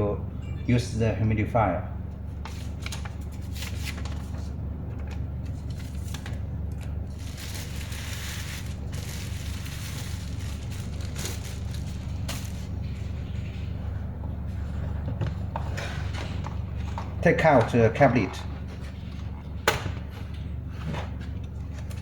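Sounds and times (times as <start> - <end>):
steady low hum: 0.0 - 22.0
paper and cardboard rustling: 2.4 - 4.5, 7.1 - 12.8.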